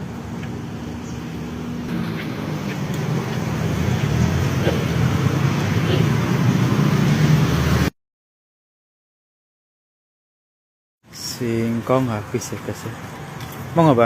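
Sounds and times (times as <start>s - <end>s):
road noise: 0.0s - 7.9s, 11.0s - 14.0s
vehicle engine running: 0.0s - 7.9s.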